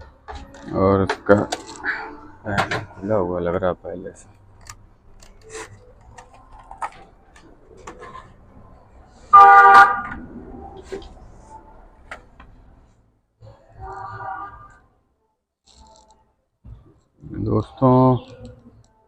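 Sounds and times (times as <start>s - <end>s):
vehicle horn honk: 9.3s - 10.2s, 13.8s - 14.8s.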